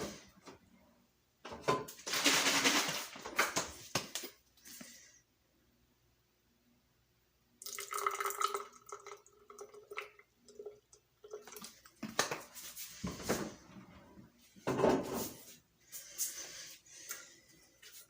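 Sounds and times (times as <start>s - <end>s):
water pouring and splashing: 11.2s - 12.2s.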